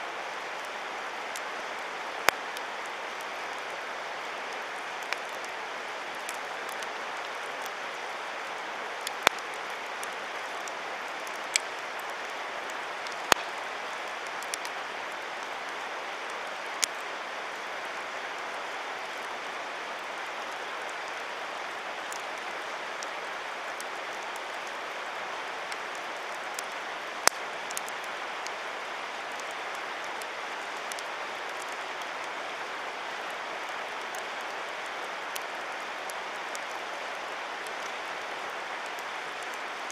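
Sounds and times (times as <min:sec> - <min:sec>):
campfire crackling: 0:00.1 - 0:39.9
fire popping: 0:09.0 - 0:14.8, 0:25.7 - 0:28.4.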